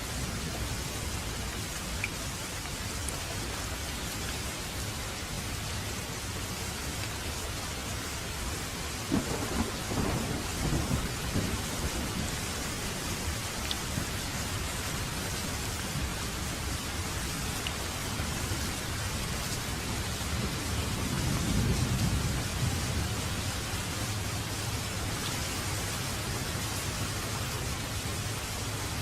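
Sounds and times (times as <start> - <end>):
steady rain: 0.0 - 29.0
low rolling thunder: 9.0 - 14.2, 19.7 - 25.1.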